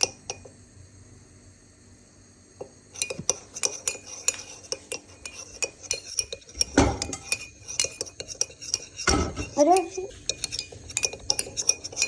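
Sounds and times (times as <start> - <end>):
utensil clinking against bowl: 2.6 - 12.0.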